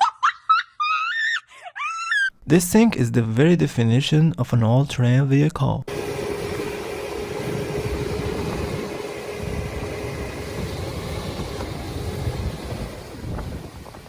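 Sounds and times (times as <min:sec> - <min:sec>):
vehicle engine running: 0:05.9 - 0:14.0.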